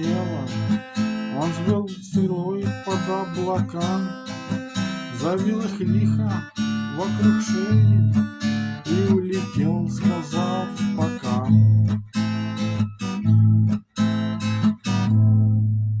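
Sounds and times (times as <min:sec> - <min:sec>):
person singing: 0:00.0 - 0:04.5, 0:05.1 - 0:11.6
acoustic guitar strumming: 0:00.0 - 0:16.0.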